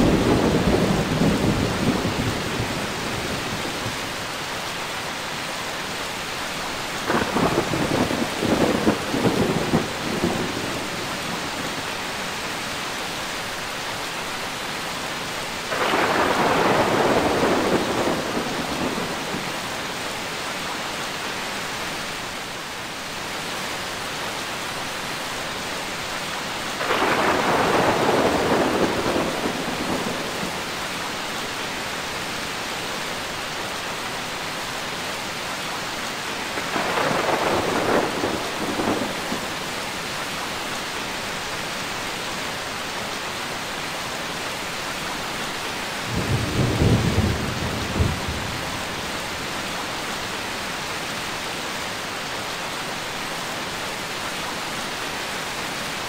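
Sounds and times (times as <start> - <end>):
thunder rumbling: 0.0 - 4.0, 7.1 - 11.7, 15.7 - 19.8, 26.8 - 30.7, 36.5 - 39.6, 46.1 - 49.2
steady rain falling: 0.0 - 56.0.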